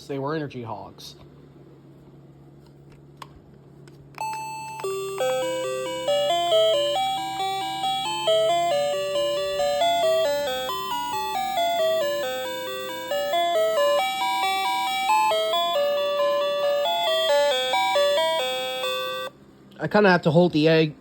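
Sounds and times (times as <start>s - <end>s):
electronic doorbell melody: 4.2s - 19.3s.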